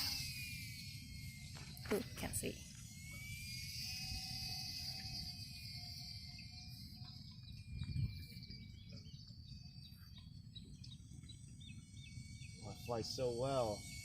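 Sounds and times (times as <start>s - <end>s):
rc plane motor whine: 0.0s - 14.0s
wind on microphone: 7.4s - 9.3s.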